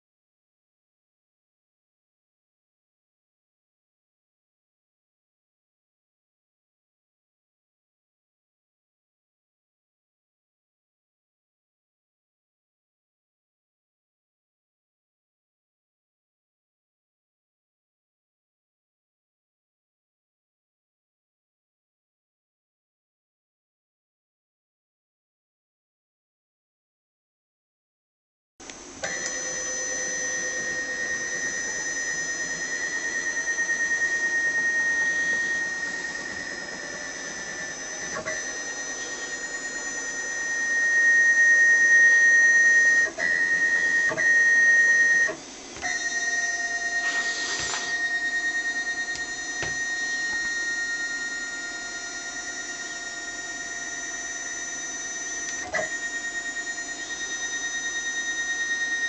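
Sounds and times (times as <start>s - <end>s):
stepper motors whining: 29.0s - 59.0s.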